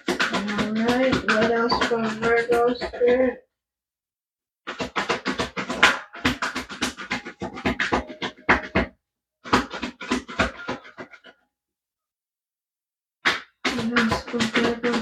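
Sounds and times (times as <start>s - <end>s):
cards being shuffled: 4.7s - 8.9s.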